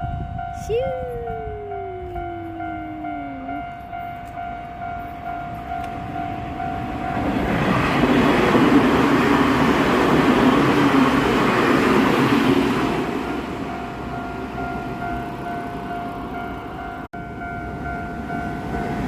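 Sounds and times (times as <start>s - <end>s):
level crossing bell dinging: 0.0s - 7.2s
train rushing past: 5.2s - 19.0s.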